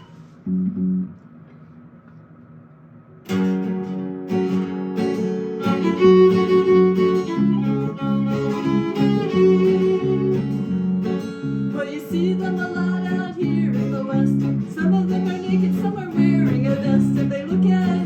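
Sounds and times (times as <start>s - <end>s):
acoustic guitar strumming: 3.2s - 18.0s
fiddle bowed melody: 5.4s - 11.1s.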